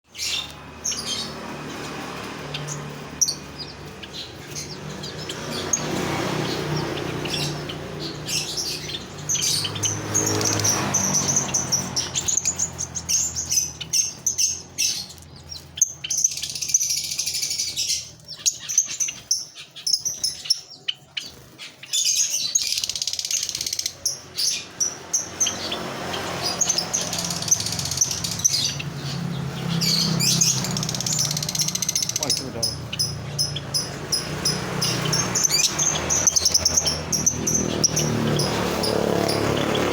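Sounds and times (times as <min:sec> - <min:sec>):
lovebird chattering: 0:00.1 - 0:39.9.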